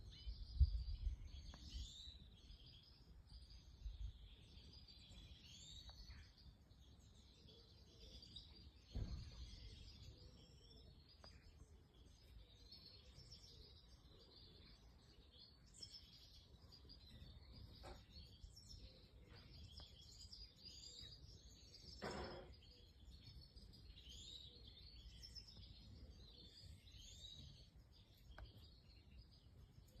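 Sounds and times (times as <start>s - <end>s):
low thump: 8.9s - 9.6s.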